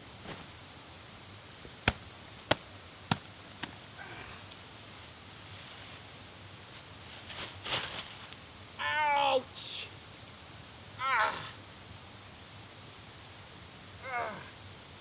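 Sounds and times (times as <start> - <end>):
rustling: 0.0 - 0.6, 1.6 - 6.1
sharp knocks: 1.7 - 3.8.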